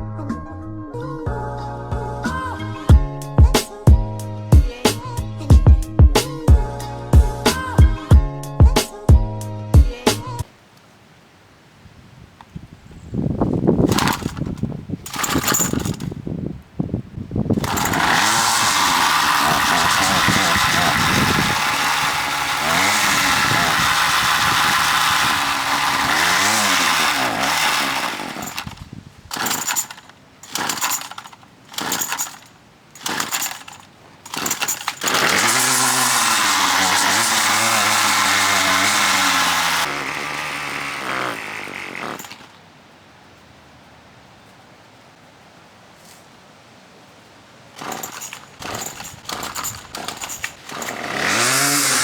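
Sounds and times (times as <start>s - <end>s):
string trimmer engine running: 13.8s - 16.2s, 17.5s - 42.6s, 47.8s - 52.0s.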